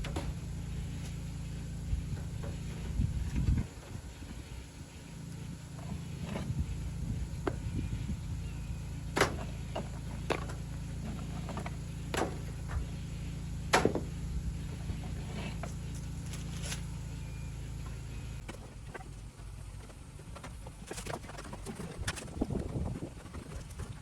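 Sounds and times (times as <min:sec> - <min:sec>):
low rumble: 0:00.0 - 0:18.4.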